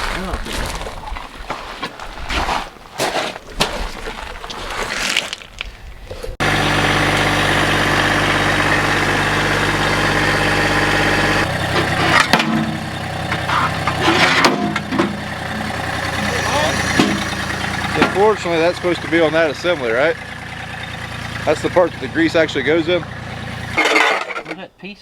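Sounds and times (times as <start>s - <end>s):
engine idling: 6.4s - 24.2s
sharp knocks: 12.2s - 18.4s.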